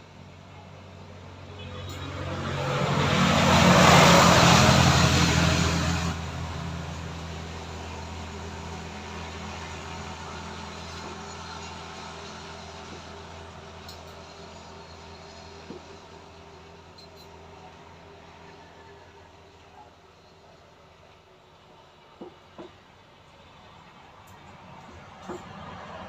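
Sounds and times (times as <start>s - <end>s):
motor vehicle passing: 1.7s - 16.2s.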